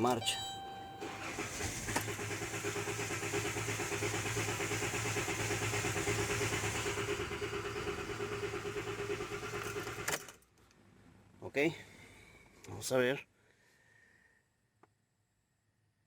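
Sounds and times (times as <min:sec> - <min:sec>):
engine starter cranking: 0:00.0 - 0:06.8.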